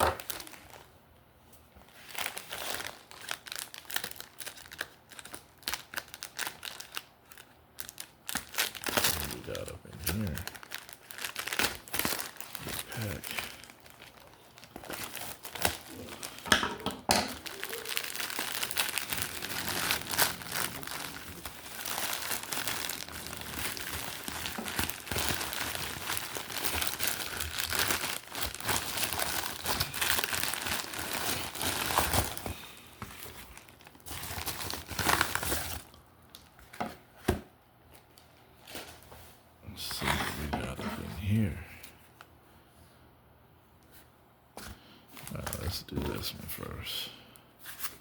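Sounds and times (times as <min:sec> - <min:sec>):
card pack wrapper crinkling: 0:00.0 - 0:00.9, 0:01.9 - 0:16.5, 0:17.3 - 0:36.8.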